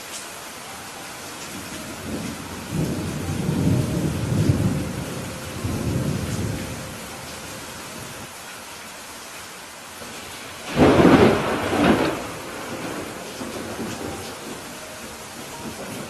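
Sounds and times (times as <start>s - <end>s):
rain hissing: 0.0s - 16.0s
rumble of thunder: 1.9s - 7.1s, 10.6s - 16.0s.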